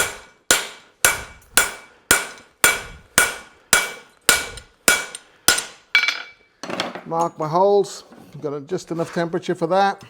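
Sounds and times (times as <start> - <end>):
hammer ringing on metal: 0.0 - 6.2.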